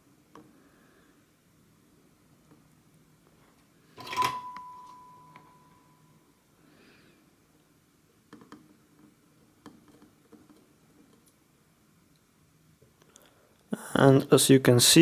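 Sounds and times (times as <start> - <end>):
soldering clicks and taps: 8.3 - 11.4.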